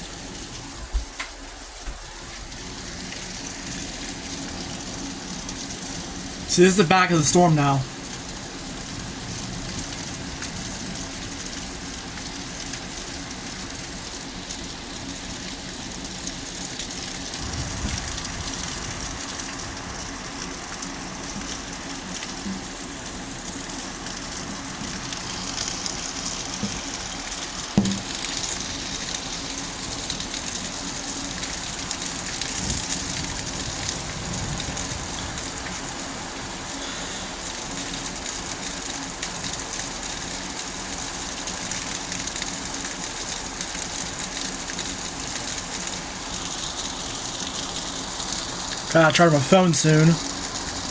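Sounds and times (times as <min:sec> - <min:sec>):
steady rain: 0:00.0 - 0:50.9
sharp knock: 0:27.8 - 0:28.2.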